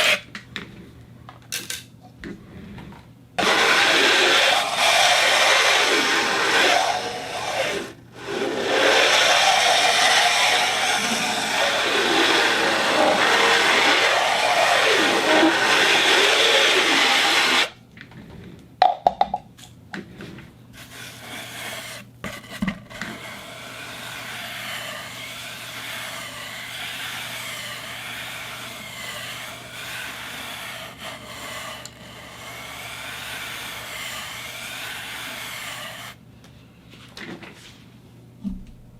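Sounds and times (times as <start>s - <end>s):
turntable running: 3.4s - 17.7s.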